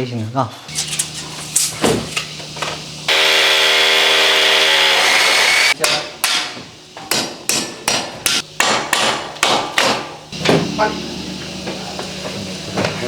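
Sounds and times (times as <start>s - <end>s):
power tool running: 3.1s - 5.8s.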